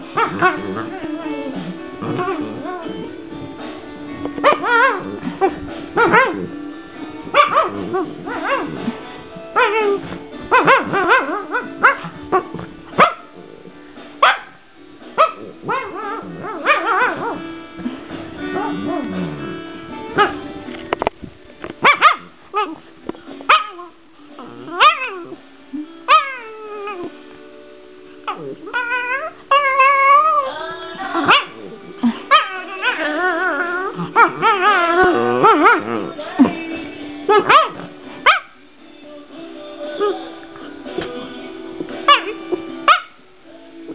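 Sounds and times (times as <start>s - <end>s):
dog yipping and whining: 4.4s - 6.5s, 9.6s - 13.3s, 15.2s - 17.4s, 18.5s - 20.4s, 23.5s - 25.4s, 26.1s - 27.2s, 28.3s - 36.6s, 42.1s - 43.1s.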